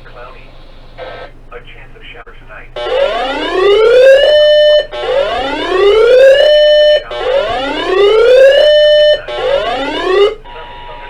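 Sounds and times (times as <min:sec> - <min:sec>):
electronic whooping alarm: 0:02.8 - 0:11.0.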